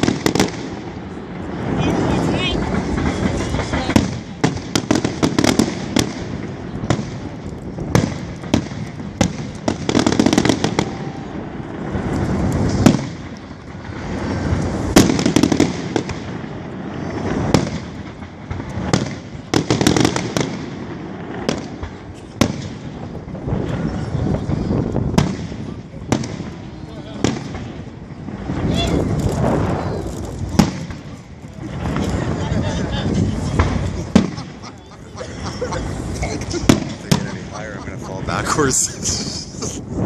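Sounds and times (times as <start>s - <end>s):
rushing booming noise: 0.0s - 19.1s, 35.3s - 39.0s
fireworks bangs and crackling: 0.0s - 40.0s.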